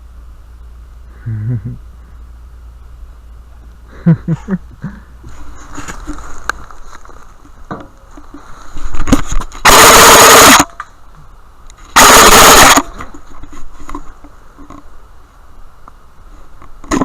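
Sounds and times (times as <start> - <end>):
airsoft rifle full-auto bursts: 9.6 - 10.7, 12.0 - 12.9.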